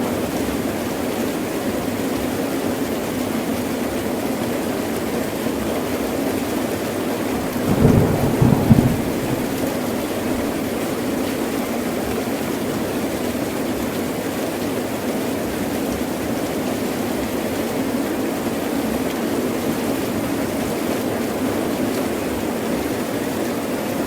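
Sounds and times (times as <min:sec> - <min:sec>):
heavy rain pouring: 0:05.8 - 0:24.0.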